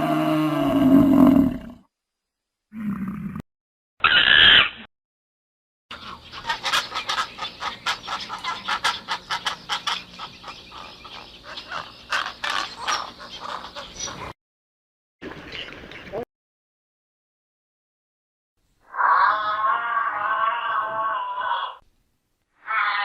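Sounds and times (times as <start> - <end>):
bird clucking call: 5.9 - 14.3.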